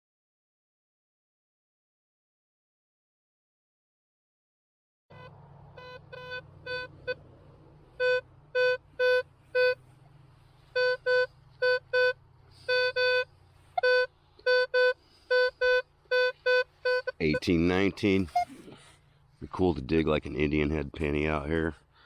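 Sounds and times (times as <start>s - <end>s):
metal detector short beeps: 8.0s - 9.8s, 10.7s - 17.6s, 18.2s - 18.6s.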